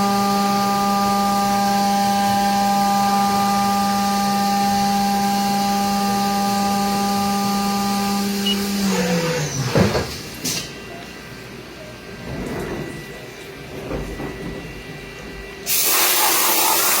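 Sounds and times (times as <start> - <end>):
machine spindle whining: 0.1 - 10.0.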